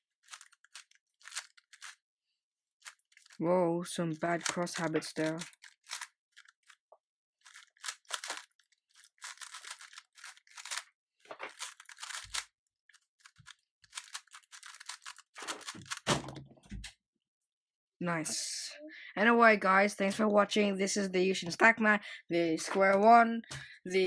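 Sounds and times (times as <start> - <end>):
plastic cube clacking: 0.2 - 2.0, 2.8 - 3.4, 4.3 - 6.8, 7.4 - 16.3.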